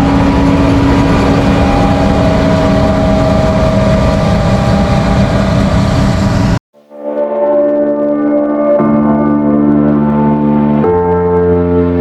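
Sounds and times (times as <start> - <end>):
heavy farm machinery engine drone: 0.0 - 6.6.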